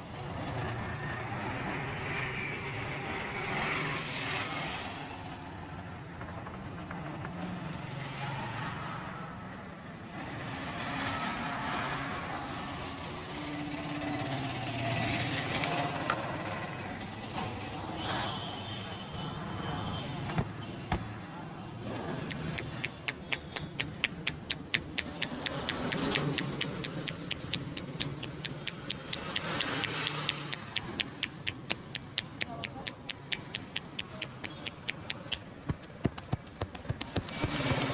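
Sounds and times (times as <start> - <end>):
street traffic: 0.0 - 37.9
hands tapping on a head: 22.3 - 37.9.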